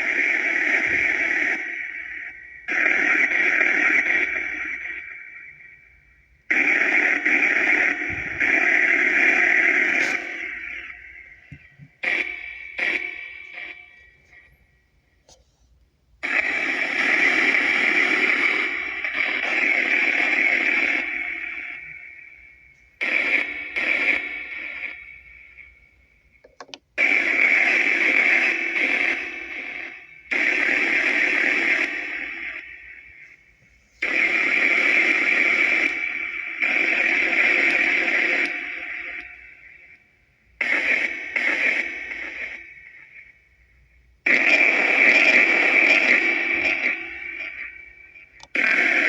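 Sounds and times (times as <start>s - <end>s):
bursts of white noise with echo: 0.0s - 14.6s, 16.2s - 49.0s
clicks: 26.4s - 26.9s.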